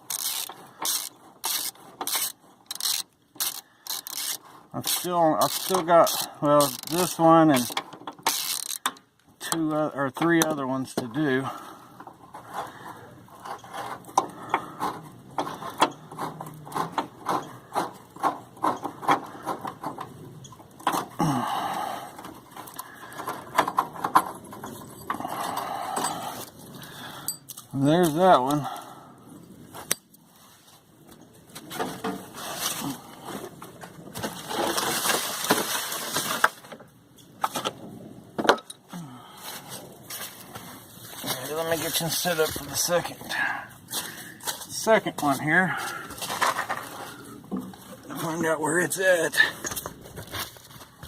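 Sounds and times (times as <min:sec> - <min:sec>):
ratchet wrench clicking: 0:00.0 - 0:07.0, 0:07.6 - 0:08.9
rustling and scraping: 0:00.0 - 0:08.9, 0:11.0 - 0:21.2, 0:22.0 - 0:38.5, 0:39.2 - 0:51.0.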